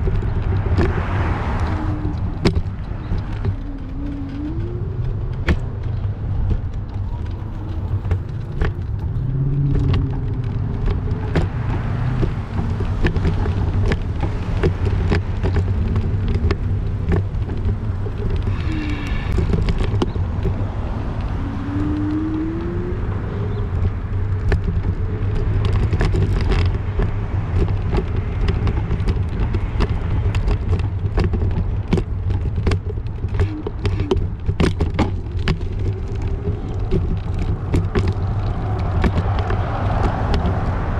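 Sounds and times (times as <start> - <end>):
cars passing: 0.0 - 40.9
low traffic rumble: 0.0 - 40.9
high squeal: 18.5 - 19.4.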